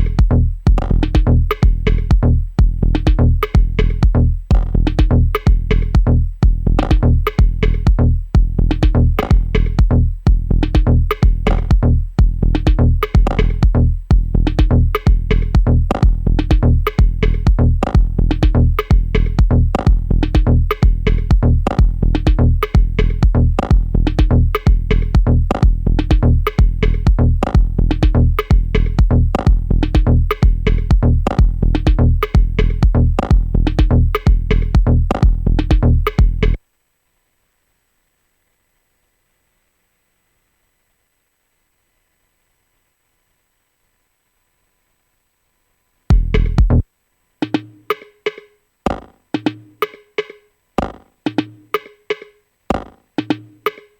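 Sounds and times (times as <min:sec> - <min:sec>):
dub techno drum machine loop: 0:00.0 - 0:36.6, 0:46.1 - 0:46.8, 0:47.4 - 0:53.9
synth chords: 0:00.0 - 0:36.6, 0:46.1 - 0:46.8
deep sustained bass: 0:46.1 - 0:46.8.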